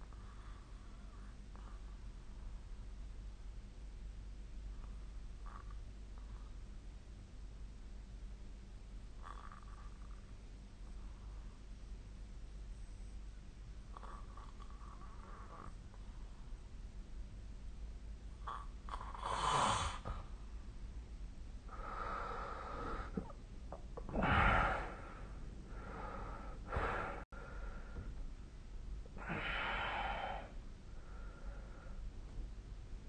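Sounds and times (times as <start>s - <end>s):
person snoring: 18.5s - 20.2s.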